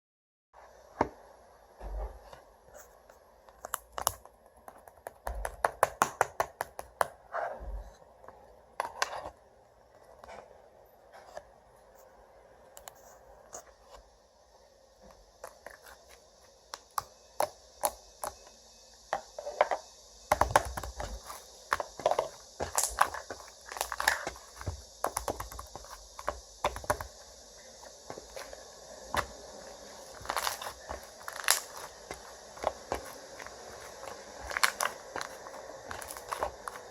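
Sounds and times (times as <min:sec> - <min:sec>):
sticky slime squishing: 0:20.3 - 0:27.2, 0:28.1 - 0:36.9.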